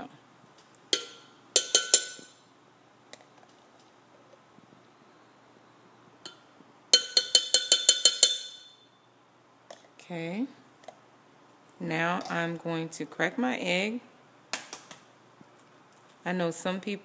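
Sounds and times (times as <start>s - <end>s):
spoon tapping glass rim: 0.9s - 2.4s, 6.2s - 8.9s.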